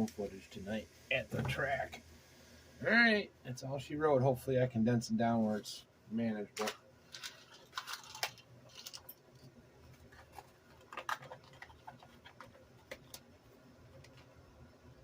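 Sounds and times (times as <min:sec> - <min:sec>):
faint clicks and taps: 0:08.8 - 0:13.3, 0:13.9 - 0:14.4.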